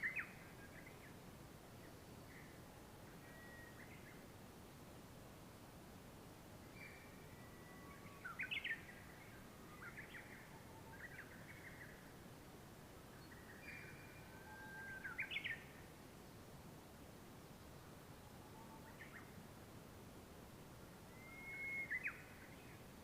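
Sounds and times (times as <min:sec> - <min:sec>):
low hiss: 0:00.0 - 0:23.0
bird chirping: 0:06.7 - 0:12.0, 0:13.1 - 0:15.8, 0:21.1 - 0:22.9.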